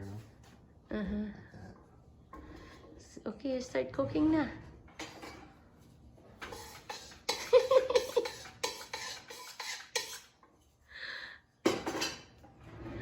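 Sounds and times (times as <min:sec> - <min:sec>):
metal utensil scraping a wok: 0:06.4 - 0:10.5.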